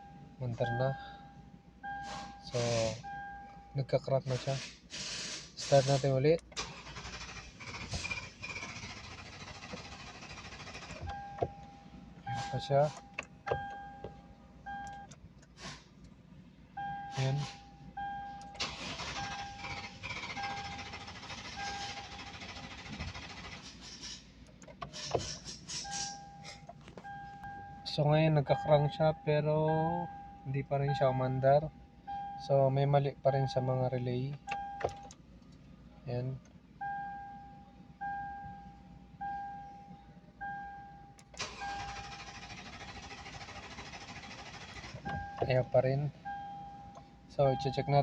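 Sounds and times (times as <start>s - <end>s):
dashboard warning chime: 0.0s - 4.1s, 10.9s - 15.2s, 16.8s - 22.2s, 25.8s - 35.2s, 36.8s - 42.6s, 44.8s - 48.0s
engine cranking without firing: 5.6s - 15.7s, 18.3s - 27.8s, 41.2s - 47.8s.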